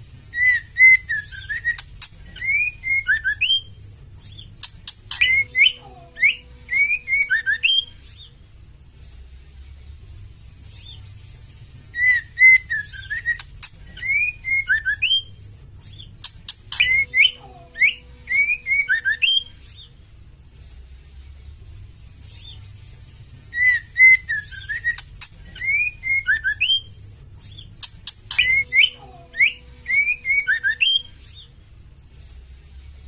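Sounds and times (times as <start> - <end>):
bird whistled notes: 0.3 - 3.7, 4.3 - 8.3, 11.9 - 15.3, 15.9 - 19.9, 23.5 - 26.9, 27.5 - 31.5
bird sharp clicks: 4.6 - 5.4, 12.9 - 14.3, 16.2 - 17.0, 27.8 - 28.9.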